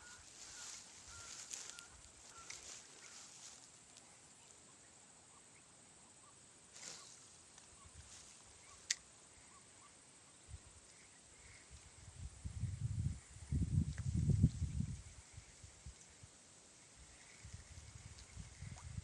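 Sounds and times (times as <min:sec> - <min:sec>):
faint chirps: 0:00.0 - 0:11.9
high insect hum: 0:00.0 - 0:19.0.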